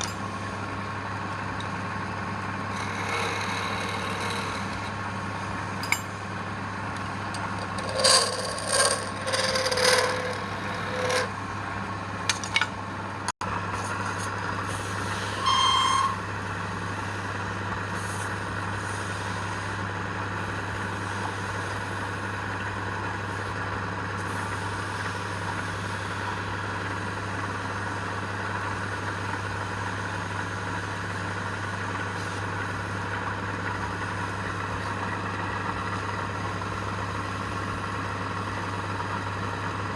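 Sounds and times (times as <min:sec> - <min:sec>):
tool scraping spinning wood: 0:01.6 - 0:12.6, 0:13.7 - 0:19.8
wood lathe motor humming: 0:02.2 - 0:05.8, 0:06.4 - 0:11.4, 0:14.7 - 0:17.8.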